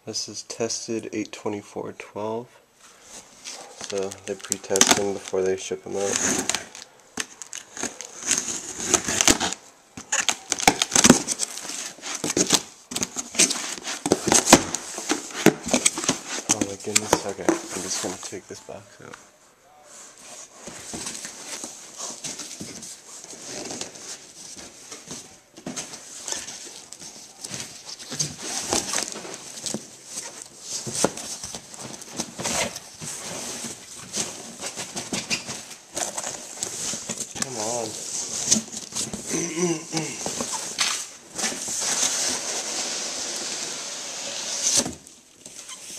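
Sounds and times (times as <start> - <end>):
cardboard crinkling and scraping: 2.8 - 19.1, 19.9 - 45.9
cardboard scraping on cardboard: 41.4 - 45.0.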